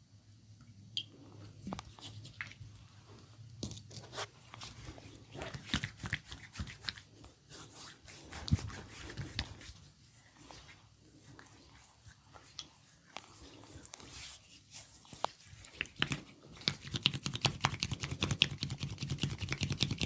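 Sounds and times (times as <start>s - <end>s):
low steady hum: 0.0s - 19.4s
hands massaging skin: 4.2s - 20.0s.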